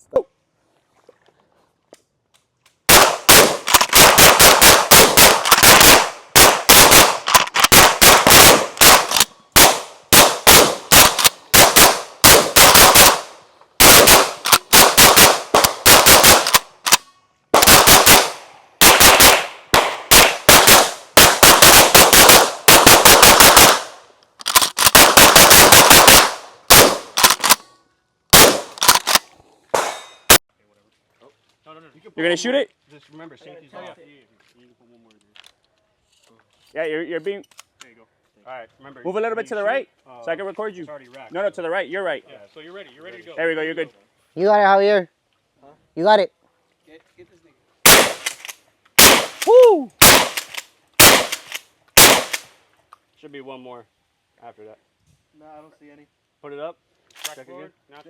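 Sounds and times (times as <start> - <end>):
rapid gunfire: 2.9 - 16.6, 17.6 - 24.0, 24.8 - 27.6, 28.3 - 28.8, 47.8 - 48.4, 49.0 - 49.4, 50.0 - 50.4, 51.0 - 51.4, 52.0 - 52.4.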